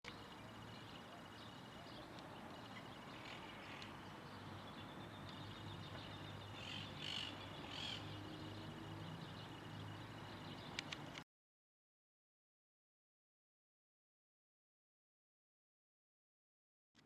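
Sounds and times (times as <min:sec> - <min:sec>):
birds calling faintly: 0:00.1 - 0:11.2.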